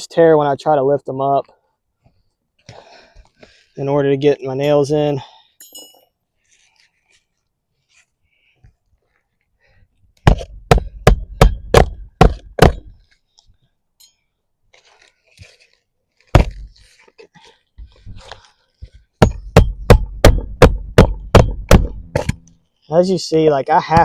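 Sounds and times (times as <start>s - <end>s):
hammer striking roofing nails: 10.3s - 13.0s, 19.2s - 22.5s.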